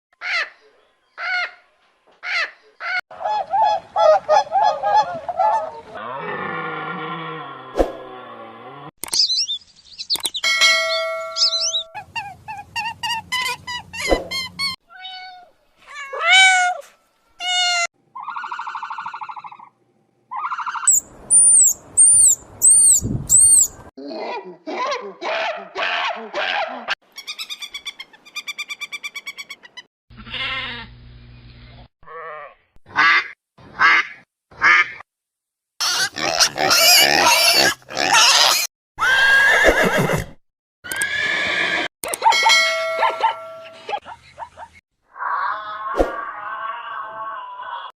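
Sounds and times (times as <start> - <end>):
repeated high bird notes: 9.1 - 12.0, 20.9 - 23.7
whistled bird chirps: 9.2 - 10.5, 11.4 - 11.9, 20.9 - 23.7
harsh raspy bird calls: 20.3 - 23.8.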